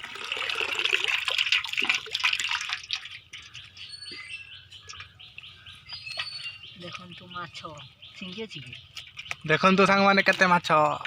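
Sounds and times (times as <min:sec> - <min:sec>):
water splashing: 0:00.0 - 0:04.0
water dripping: 0:00.0 - 0:07.8, 0:08.4 - 0:11.0.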